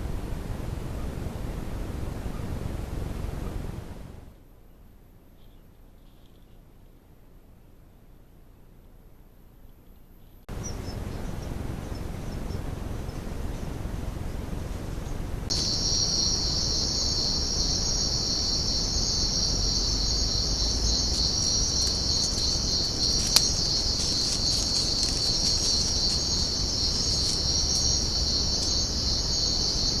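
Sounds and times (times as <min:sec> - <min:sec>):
high insect chorus: 0:15.5 - 0:30.0.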